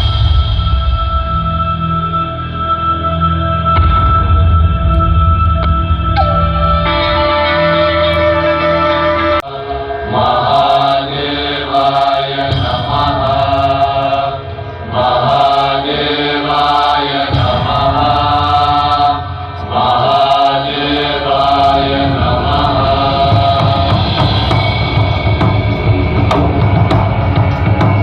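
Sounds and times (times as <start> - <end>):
low musical drone: 0.0 - 28.0
mantra chanting: 6.9 - 24.7.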